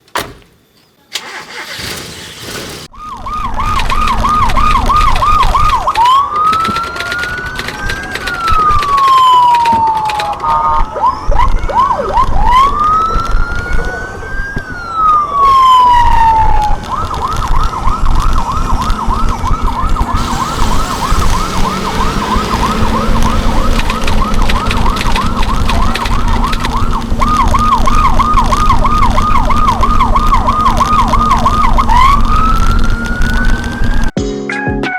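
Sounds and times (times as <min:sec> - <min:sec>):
car siren yelping and wailing: 0:01.2 - 0:02.2, 0:02.9 - 0:34.1
car engine running: 0:19.0 - 0:34.1.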